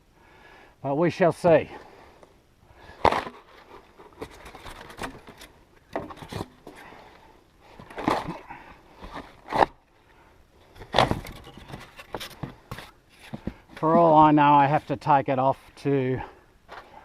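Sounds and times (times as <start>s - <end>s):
knocks bumps and scrapes of handling: 2.9s - 6.9s, 7.7s - 9.8s, 10.7s - 14.4s.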